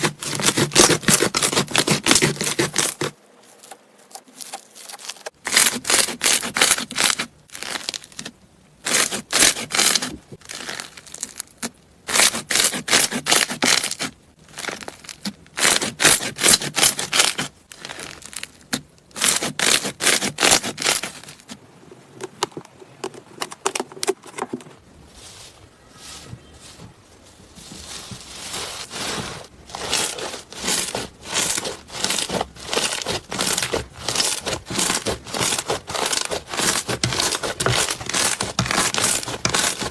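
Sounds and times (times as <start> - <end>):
slime crackling and popping: 4.4 - 21.3, 29.8 - 39.9.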